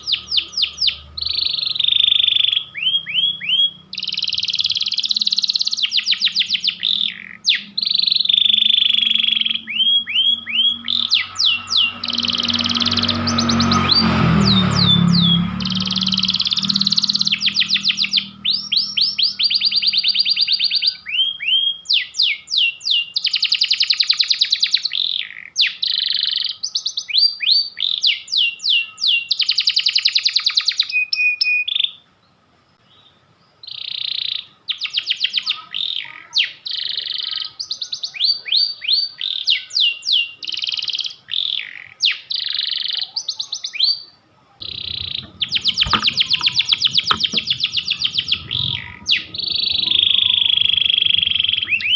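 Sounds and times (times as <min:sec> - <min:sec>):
canary singing trills: 0:00.0 - 0:51.9.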